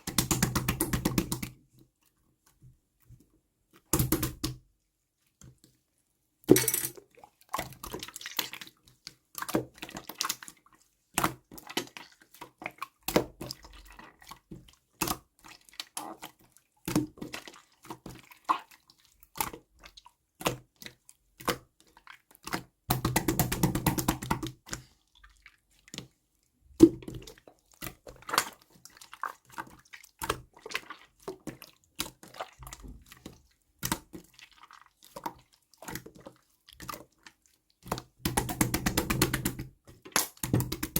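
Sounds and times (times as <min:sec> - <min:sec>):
containers and utensils clinking: 0:06.5 - 0:07.0.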